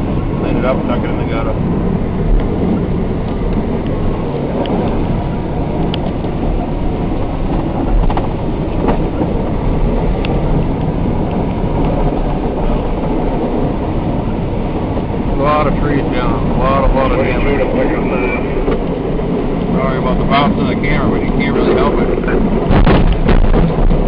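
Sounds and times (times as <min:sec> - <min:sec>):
truck cab rumble and rattling: 0:00.0 - 0:24.0
sharp clicks and clunks: 0:05.7 - 0:06.5, 0:07.1 - 0:09.4, 0:18.6 - 0:19.0, 0:22.6 - 0:24.0.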